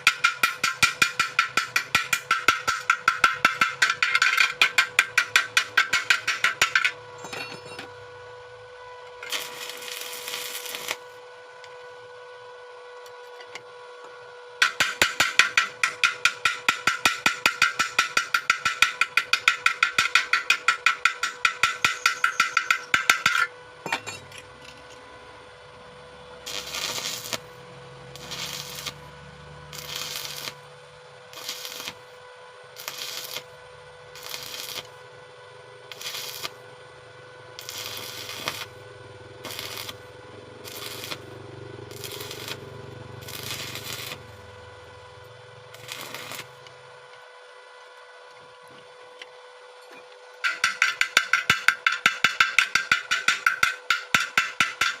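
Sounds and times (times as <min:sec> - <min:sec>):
hammer tapping on metal: 0:00.0 - 0:07.9, 0:14.6 - 0:24.4, 0:50.4 - 0:55.0
steady hum: 0:00.0 - 0:55.0.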